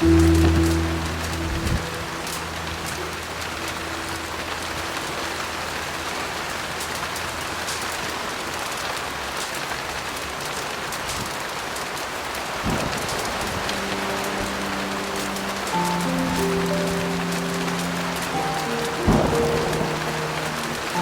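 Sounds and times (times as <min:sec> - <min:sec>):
low piano chord: 0:00.0 - 0:08.0, 0:12.7 - 0:21.0
heavy rain hissing: 0:00.0 - 0:21.0.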